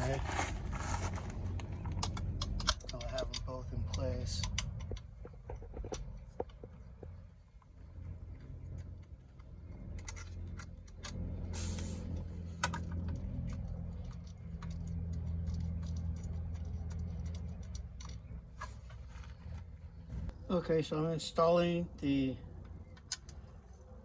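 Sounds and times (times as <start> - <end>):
steady low rumble: 0.0 - 24.0
hand tools clicking and tapping: 1.7 - 7.2.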